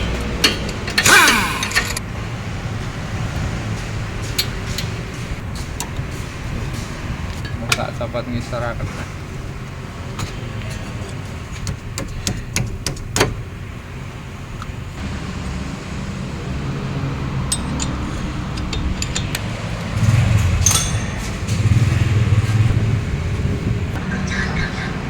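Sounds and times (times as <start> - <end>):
hand tools clinking on metal: 0.4 - 2.0, 17.4 - 22.0.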